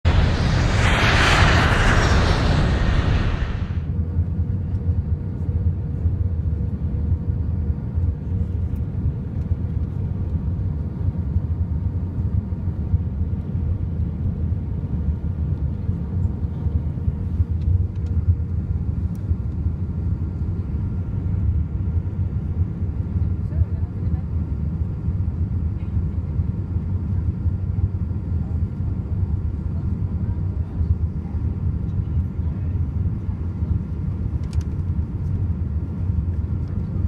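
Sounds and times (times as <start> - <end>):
airplane cabin engine rumble: 0.0 - 3.9, 32.4 - 37.0.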